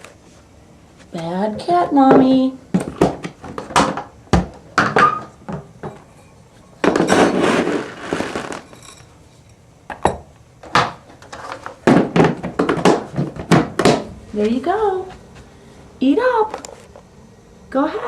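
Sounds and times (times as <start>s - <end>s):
dish and container knocks: 11.8s - 14.1s.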